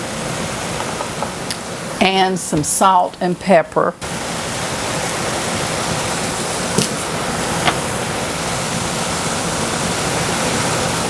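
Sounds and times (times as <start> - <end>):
vegetables sizzling in a frying pan: 4.0 - 11.0.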